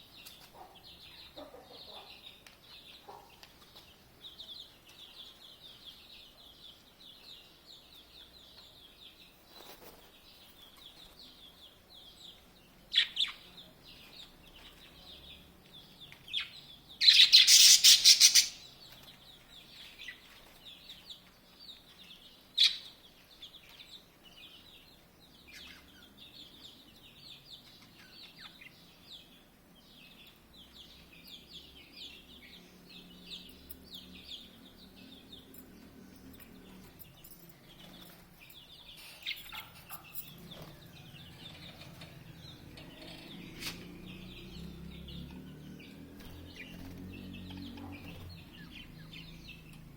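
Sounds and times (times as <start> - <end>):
small birds chirping: 0.0 - 49.9
sharp bird calls: 16.3 - 19.1.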